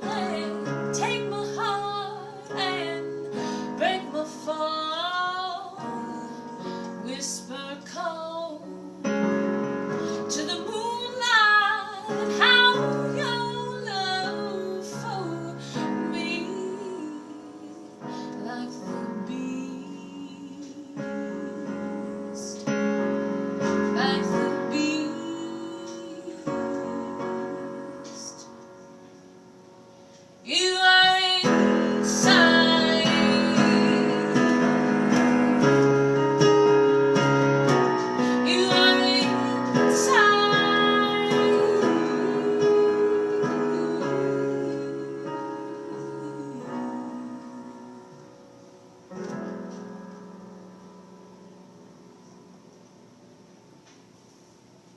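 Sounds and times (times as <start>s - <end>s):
woman singing: 0.0s - 9.4s, 10.0s - 22.9s, 23.6s - 28.6s, 30.4s - 36.5s, 38.0s - 48.2s
jazz piano: 0.0s - 54.9s.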